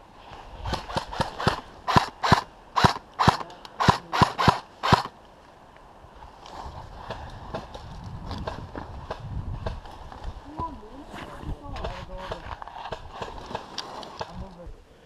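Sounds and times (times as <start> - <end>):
airsoft gun shots: 0.7 - 5.1.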